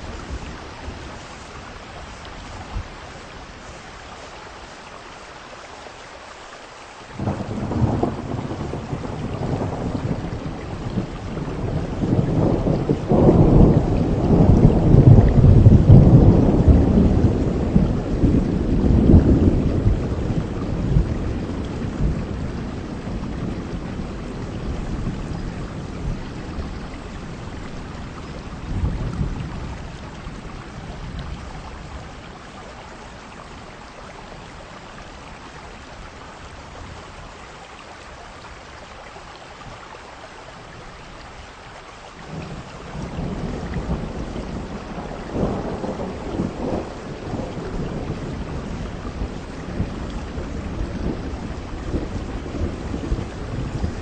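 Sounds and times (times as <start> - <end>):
heavy rain: 0.0 - 54.0
thunder rumbling: 7.2 - 33.8, 42.2 - 54.0.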